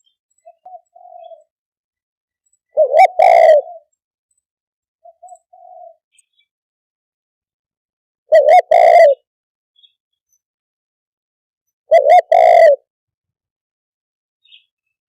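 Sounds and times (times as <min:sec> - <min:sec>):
dove cooing: 0:00.4 - 0:01.5, 0:02.7 - 0:04.0, 0:05.0 - 0:06.1, 0:08.3 - 0:09.2, 0:11.9 - 0:12.9.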